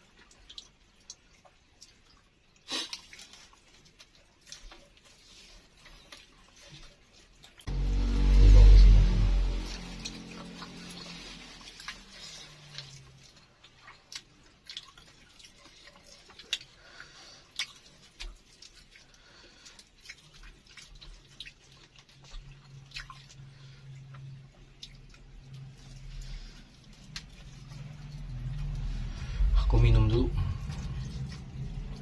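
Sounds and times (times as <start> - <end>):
crunchy chewing: 10.5 - 29.6.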